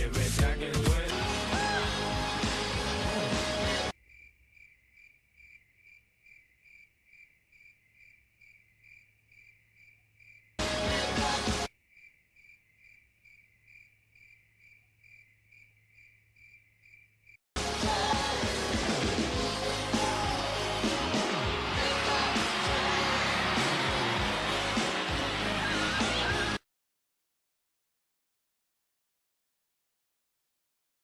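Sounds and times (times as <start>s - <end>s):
loud music: 0.0s - 3.9s, 10.6s - 11.7s, 17.6s - 26.6s
crickets chirping: 4.0s - 10.6s, 11.7s - 17.4s.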